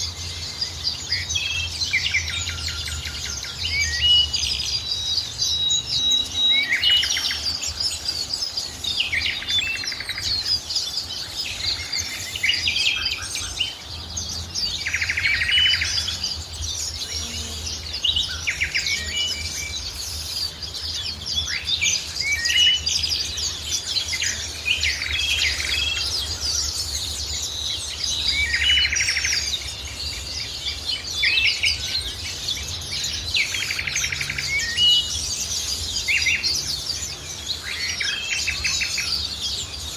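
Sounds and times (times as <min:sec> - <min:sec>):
birds chirping and singing: 0:00.0 - 0:39.9.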